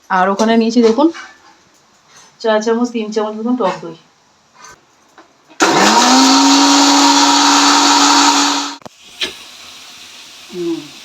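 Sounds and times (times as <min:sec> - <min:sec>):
mixer grinder motor whine: 0:05.6 - 0:08.8.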